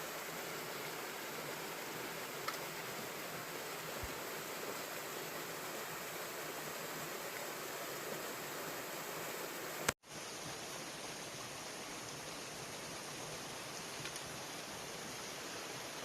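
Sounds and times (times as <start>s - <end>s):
small waterfall rushing: 0.0s - 16.0s
faint click: 2.4s - 2.6s.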